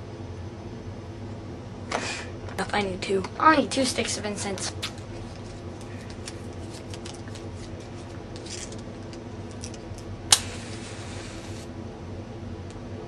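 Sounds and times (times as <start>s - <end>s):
handling rustles: 4.6s - 9.9s
flame hissing: 7.5s - 11.8s
match strike: 10.3s - 11.7s.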